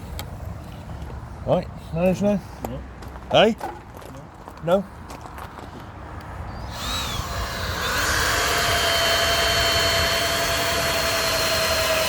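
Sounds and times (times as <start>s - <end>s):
electric power tool whining: 6.6s - 12.0s.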